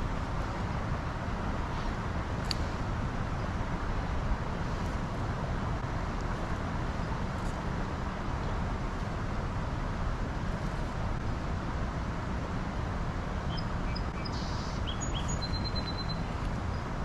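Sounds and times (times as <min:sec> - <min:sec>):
bird chirps: 0:13.5 - 0:16.8.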